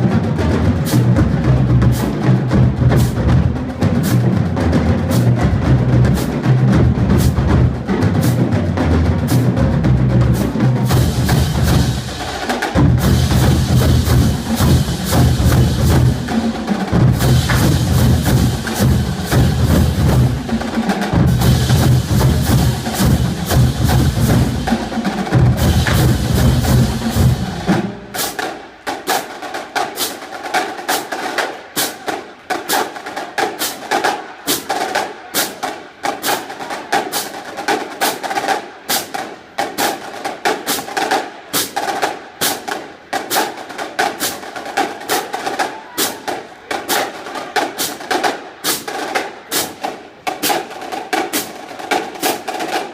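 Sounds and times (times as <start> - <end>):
bass drums: 0.0 - 28.0
marching drumline cadence: 0.0 - 52.9.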